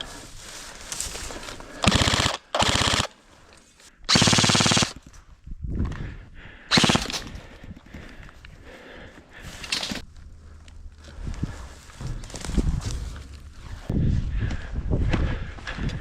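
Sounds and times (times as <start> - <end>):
airsoft gun rapid fire: 1.8 - 3.1, 4.1 - 5.0, 6.7 - 7.3.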